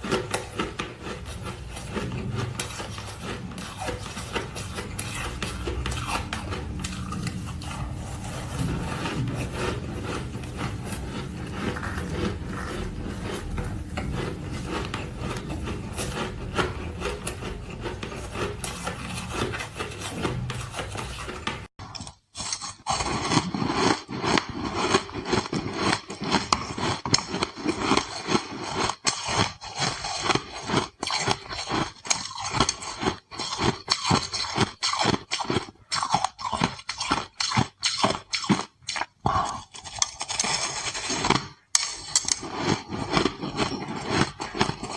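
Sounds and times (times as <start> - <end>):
rough scraping and rubbing: 0.0 - 21.7, 39.8 - 44.9
ice being chewed: 0.0 - 44.9.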